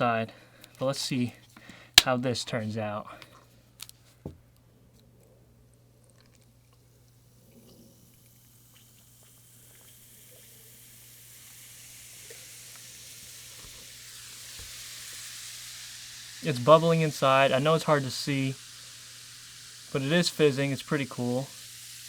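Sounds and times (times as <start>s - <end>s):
powder fizzing in water: 6.1s - 22.0s.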